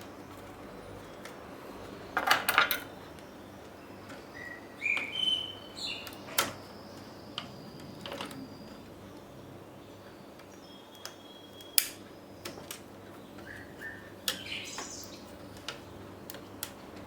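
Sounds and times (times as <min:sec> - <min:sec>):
small hard parts clicking: 0:00.0 - 0:05.3
sharp single click: 0:11.0 - 0:12.0.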